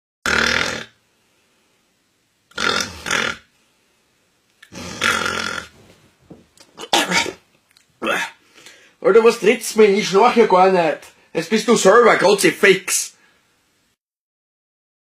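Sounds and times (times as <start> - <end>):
man snoring: 0.2 - 1.0, 2.5 - 3.5, 4.6 - 5.7.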